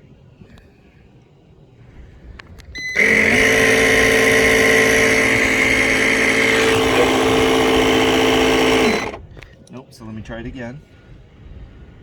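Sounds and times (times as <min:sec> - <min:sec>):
clicks: 0:02.8 - 0:09.2
air compressor whining: 0:02.8 - 0:09.3.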